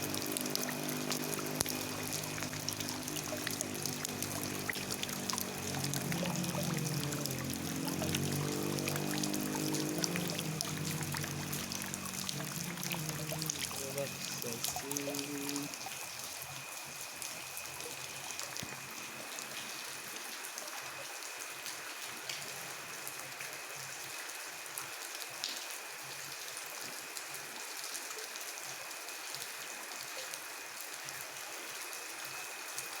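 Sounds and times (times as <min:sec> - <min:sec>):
raindrops tapping close by: 0:00.0 - 0:15.9
steady rain falling: 0:00.0 - 0:33.0.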